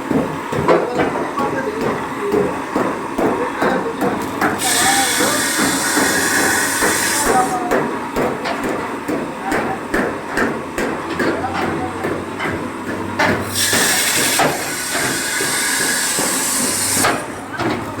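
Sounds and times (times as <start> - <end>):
loud steady hiss: 13.5 - 17.2.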